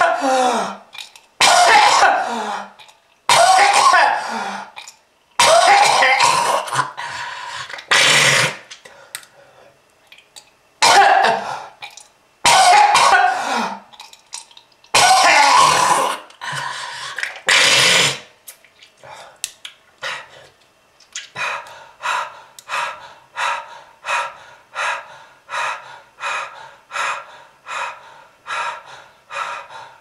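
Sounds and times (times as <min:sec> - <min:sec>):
person coughing hard: 0:01.4 - 0:02.7, 0:03.3 - 0:04.4, 0:05.4 - 0:07.0, 0:07.9 - 0:08.6, 0:10.8 - 0:11.6, 0:12.4 - 0:13.9, 0:14.9 - 0:16.3.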